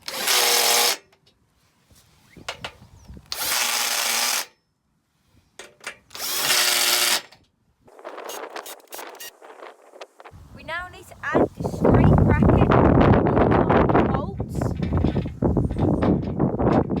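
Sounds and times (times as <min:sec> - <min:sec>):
power drill driving bolts: 0:00.0 - 0:01.1, 0:03.3 - 0:04.5, 0:05.8 - 0:07.4, 0:08.2 - 0:09.3
metal parts knocking: 0:14.7 - 0:17.0.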